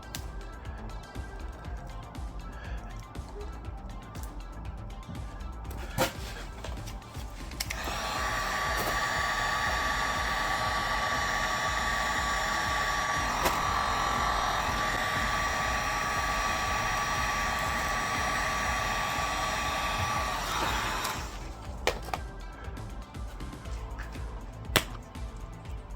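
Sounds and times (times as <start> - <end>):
electric blower motor whining: 5.4 - 25.7.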